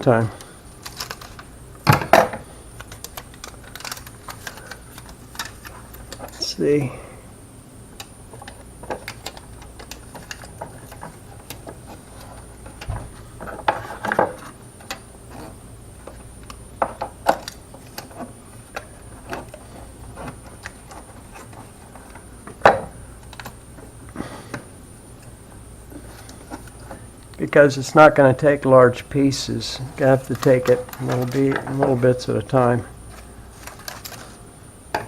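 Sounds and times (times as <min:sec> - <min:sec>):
foil tape crinkling: 0:00.8 - 0:01.5, 0:02.8 - 0:06.5, 0:30.0 - 0:32.2, 0:33.1 - 0:34.4
foil tape crackling: 0:00.8 - 0:02.0, 0:02.7 - 0:06.5, 0:29.9 - 0:32.3.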